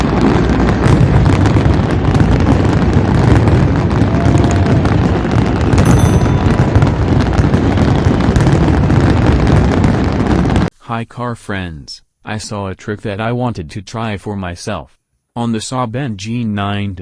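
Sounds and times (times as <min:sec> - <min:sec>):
fireworks crackling and booming: 0:00.0 - 0:10.7.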